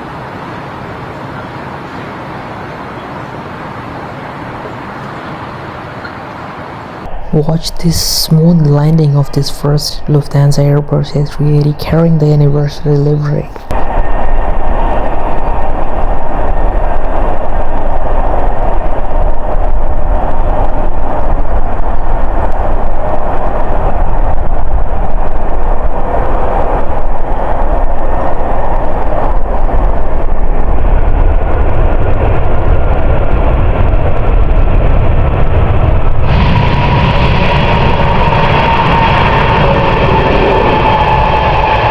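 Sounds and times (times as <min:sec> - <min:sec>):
high engine whine: 0:00.0 - 0:41.9
jet engine rumble: 0:00.0 - 0:41.9
rushing air: 0:13.7 - 0:41.9.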